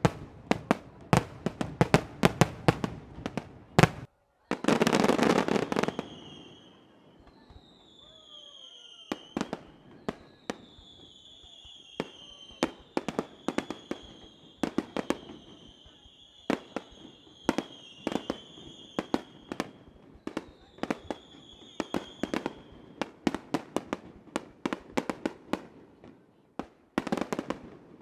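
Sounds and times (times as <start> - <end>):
firework shells bursting: 0.0 - 4.1
descending firework whistles: 5.0 - 23.1.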